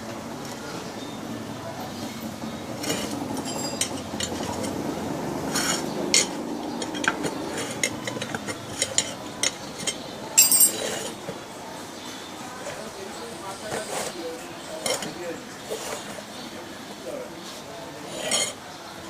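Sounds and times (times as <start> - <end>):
metal hand tools clinking: 2.8 - 4.8, 9.8 - 11.1.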